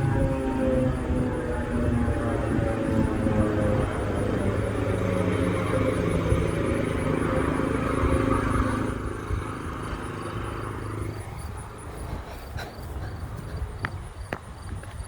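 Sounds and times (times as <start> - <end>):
warning siren winding down: 0.0 - 11.9.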